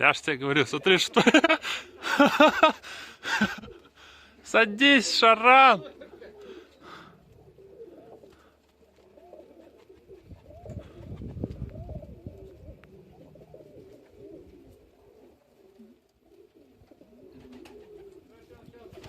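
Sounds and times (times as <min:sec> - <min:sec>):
pigeons cooing: 0:05.8 - 0:19.0.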